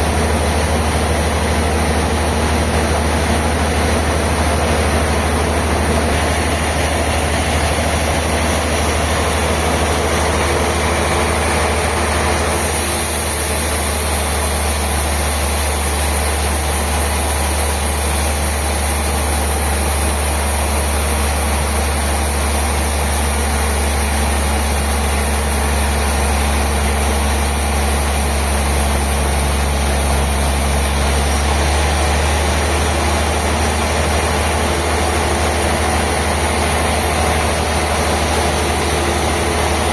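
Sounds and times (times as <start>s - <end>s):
sawmill machinery drone: 0.0s - 39.9s.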